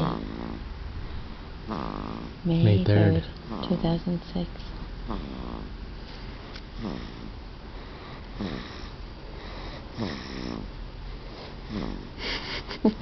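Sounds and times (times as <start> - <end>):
pet snoring: 0.0 - 0.6, 1.7 - 2.4, 5.1 - 5.7, 6.8 - 7.3, 8.0 - 10.7, 11.6 - 12.2.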